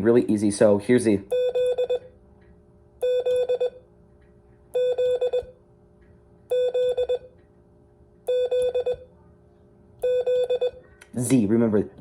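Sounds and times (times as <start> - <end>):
morse code tones: 1.3 - 2.1, 3.0 - 3.8, 4.7 - 5.6, 6.5 - 7.3, 8.3 - 9.1, 10.0 - 10.8.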